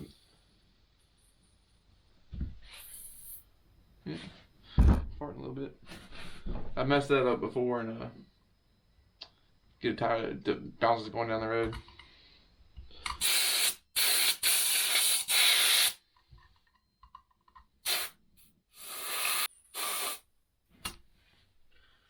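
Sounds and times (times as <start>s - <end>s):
pressurised nozzle hissing blasts: 13.2s - 16.0s, 17.8s - 18.2s, 18.8s - 20.2s.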